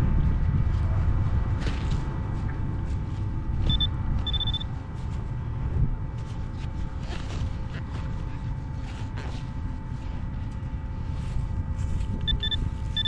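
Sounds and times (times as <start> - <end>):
wind rumble on microphone: 0.0 - 13.0
metal detector beeps: 3.6 - 4.7, 12.2 - 13.0.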